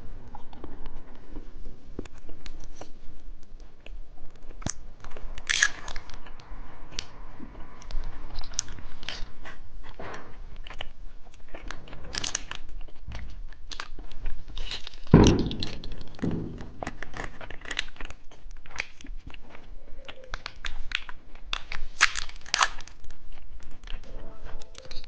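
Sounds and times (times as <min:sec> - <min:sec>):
heavy thump: 0:15.1 - 0:17.2.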